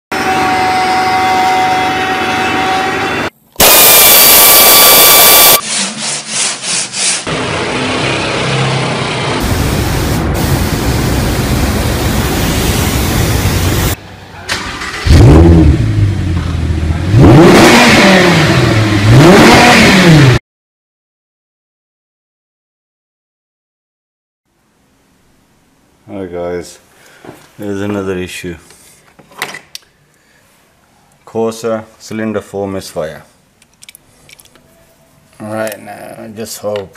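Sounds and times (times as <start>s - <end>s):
engine revving: 7.3s - 20.4s
engine sounds: 7.3s - 20.4s.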